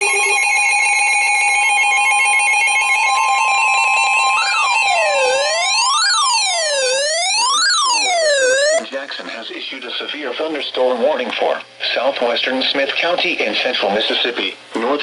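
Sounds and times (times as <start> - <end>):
siren-like sweeping tone: 0.0 - 8.8
steady high alarm tone: 0.0 - 8.8
stepping beeping pattern: 0.0 - 8.8.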